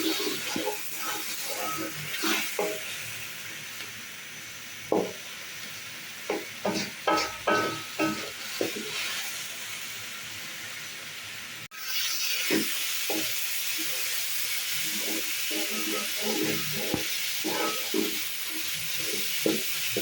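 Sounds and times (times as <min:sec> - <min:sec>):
spatula scraping and stirring: 0:00.0 - 0:03.3, 0:04.9 - 0:09.4, 0:12.4 - 0:20.0
food sizzling in a pan: 0:00.0 - 0:20.0.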